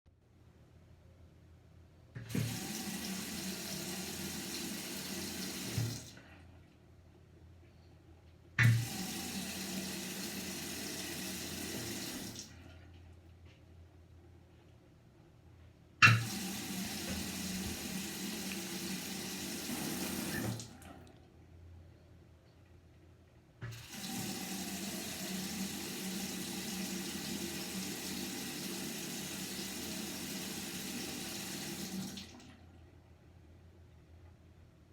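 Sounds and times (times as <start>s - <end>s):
faucet turned on and off: 2.2s - 6.2s, 8.6s - 12.5s, 16.0s - 20.9s, 23.6s - 32.5s
water running from tap: 2.2s - 6.2s, 8.6s - 12.5s, 16.0s - 20.9s, 23.6s - 32.5s.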